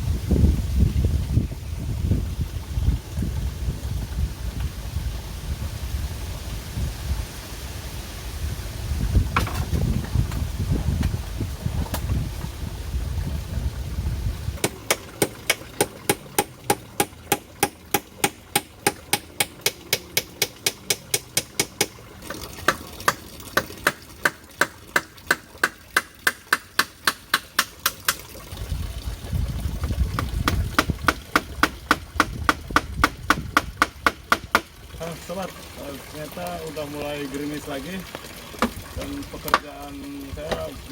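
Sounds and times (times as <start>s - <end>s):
tool striking sharp blows: 14.6s - 21.9s, 22.7s - 28.2s.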